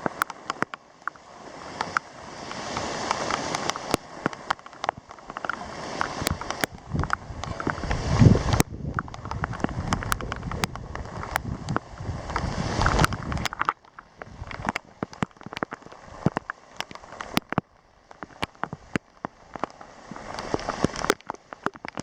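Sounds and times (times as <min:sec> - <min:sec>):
sharp ticks like drops: 0:03.3 - 0:19.8.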